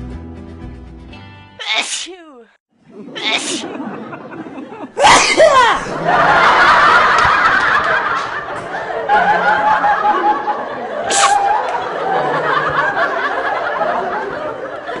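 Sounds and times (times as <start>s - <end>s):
people laughing and chattering: 2.8s - 5.0s, 5.7s - 15.0s.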